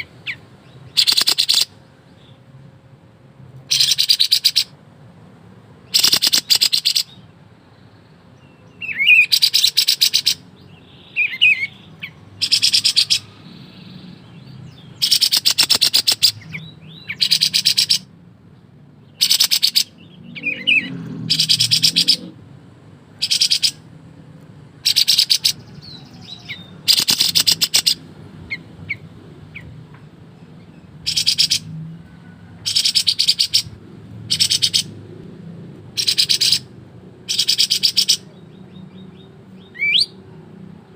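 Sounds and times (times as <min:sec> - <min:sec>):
bird rattling song bursts: 0:00.0 - 0:01.8, 0:03.7 - 0:04.8, 0:05.8 - 0:07.2, 0:08.8 - 0:10.5, 0:11.1 - 0:14.1, 0:15.0 - 0:18.1, 0:19.2 - 0:22.4, 0:23.2 - 0:23.9, 0:24.8 - 0:29.8, 0:31.0 - 0:31.7, 0:32.6 - 0:35.0, 0:35.9 - 0:38.3.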